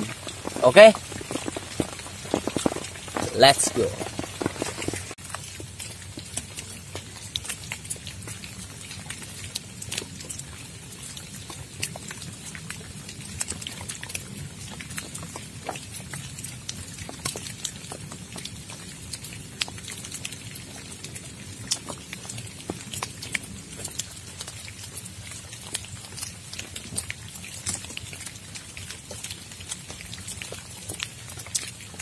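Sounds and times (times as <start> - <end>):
rain hissing: 0.0 - 5.2
raindrops ticking: 0.0 - 32.0.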